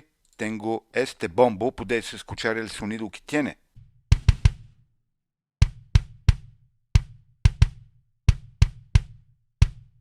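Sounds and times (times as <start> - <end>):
kick drum thumps: 3.8 - 4.8, 5.6 - 10.0.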